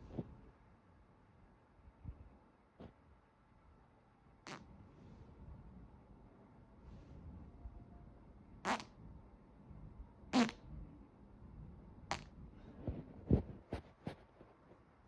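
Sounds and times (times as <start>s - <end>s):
short farts: 4.4s - 4.7s, 8.6s - 9.0s, 10.3s - 10.6s, 12.1s - 12.3s.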